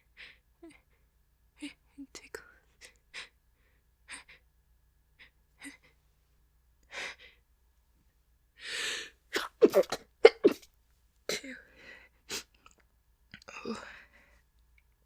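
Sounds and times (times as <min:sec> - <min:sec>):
woman gasping breaths: 0:08.6 - 0:09.2
woman sneezing: 0:09.4 - 0:10.6.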